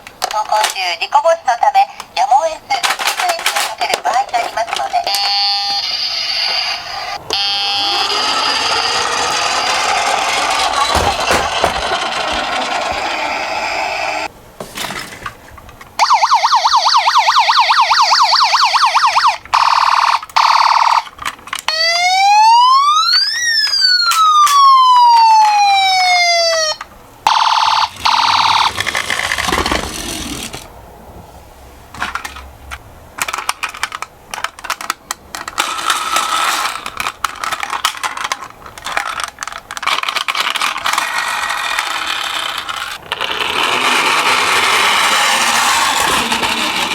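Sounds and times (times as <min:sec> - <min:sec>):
toy cars clicking and rattling: 0:00.2 - 0:01.0, 0:02.7 - 0:13.7, 0:18.6 - 0:21.8, 0:26.5 - 0:30.7, 0:32.0 - 0:46.9
toy electronic siren: 0:05.0 - 0:10.9, 0:16.0 - 0:21.1, 0:21.7 - 0:28.8, 0:44.0 - 0:46.9.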